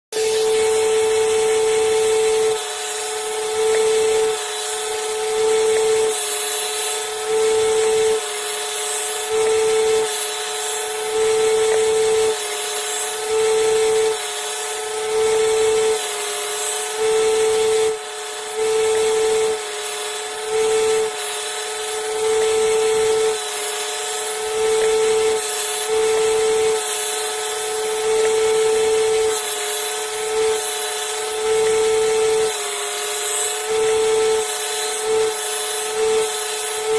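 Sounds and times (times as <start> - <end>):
workpiece pressed against sander: 0.1 - 8.2, 20.5 - 36.9
belt sander humming: 0.1 - 36.9.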